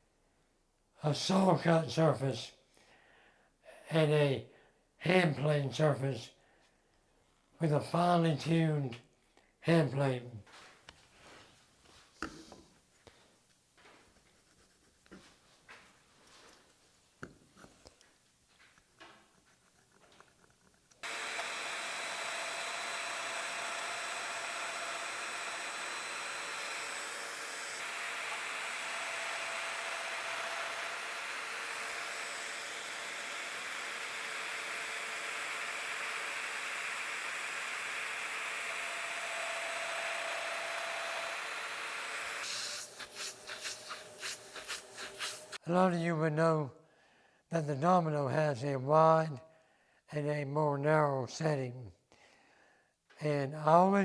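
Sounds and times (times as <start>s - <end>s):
woodworking power tool running: 21.0s - 45.6s.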